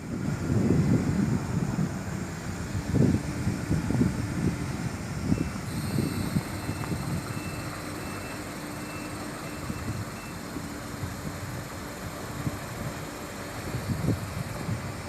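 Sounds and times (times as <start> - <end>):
excavator engine humming: 0.0 - 15.0
faint high whine: 5.2 - 14.5.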